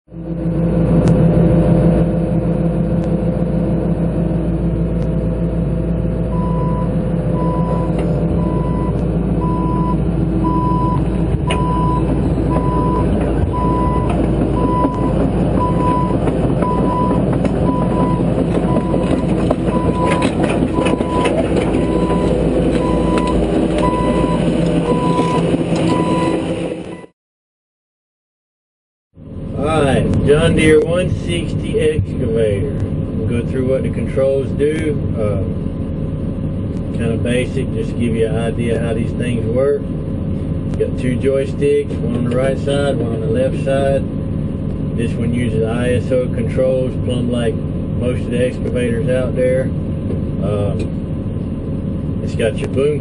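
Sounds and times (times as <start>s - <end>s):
excavator diesel engine running: 0.1s - 27.1s, 29.2s - 53.0s
travel alarm beeping: 6.3s - 27.1s.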